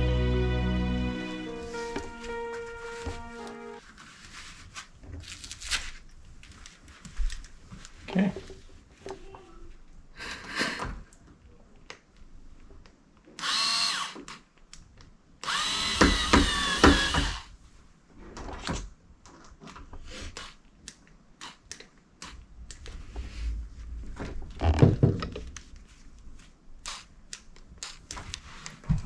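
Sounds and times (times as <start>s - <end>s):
power screwdriver whine: 13.4s - 14.2s, 15.5s - 17.5s.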